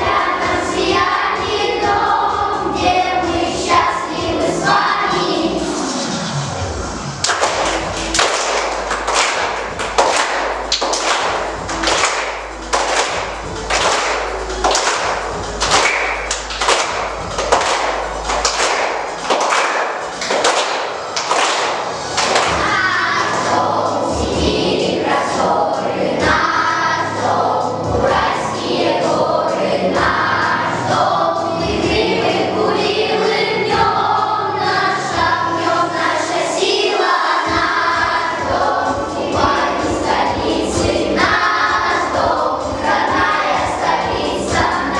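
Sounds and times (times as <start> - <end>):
children's choir singing: 0.0 - 6.4, 7.2 - 44.9
backing track with steady beat: 7.1 - 32.4, 37.4 - 44.9.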